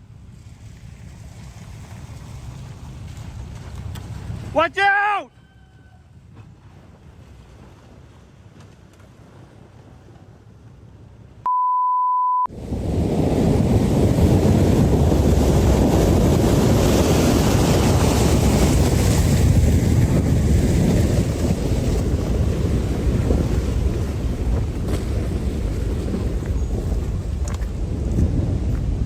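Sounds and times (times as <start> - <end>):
censor bleep: 11.5 - 12.5
storm wind buffeting microphone: 12.5 - 29.0.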